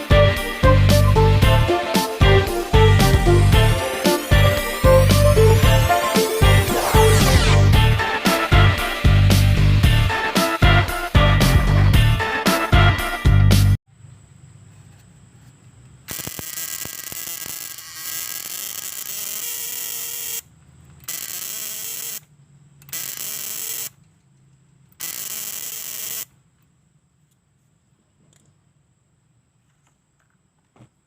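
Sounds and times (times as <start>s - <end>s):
relay buzzer buzzing harshly: 0.2s - 7.2s, 16.1s - 20.4s, 25.0s - 26.3s.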